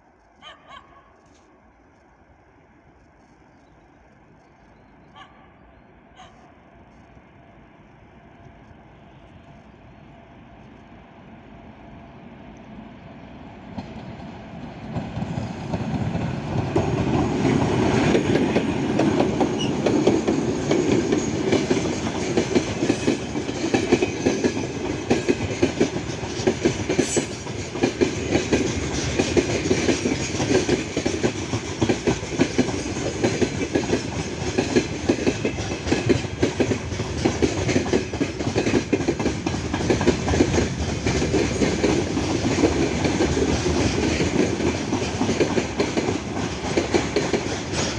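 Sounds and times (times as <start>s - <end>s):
train wheels clattering over rail joints: 13.8s - 47.9s.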